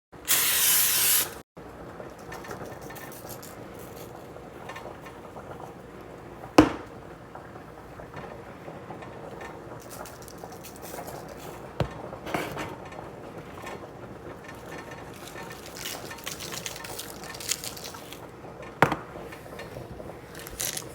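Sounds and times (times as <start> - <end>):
loud hiss: 0.3 - 1.4
kitchenware clatter: 1.8 - 5.8, 6.4 - 20.9
kitchenware knocking: 6.6 - 7.0, 11.8 - 12.8.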